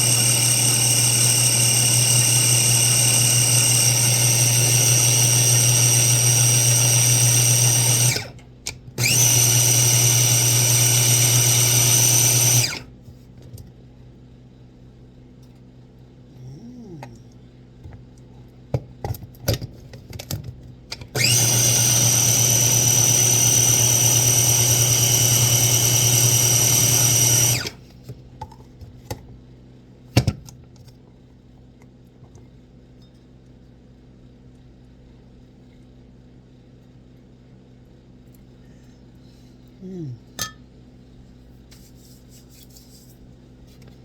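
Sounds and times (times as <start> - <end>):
food processor motor whining: 0.0 - 8.4, 9.0 - 12.9, 21.0 - 27.8.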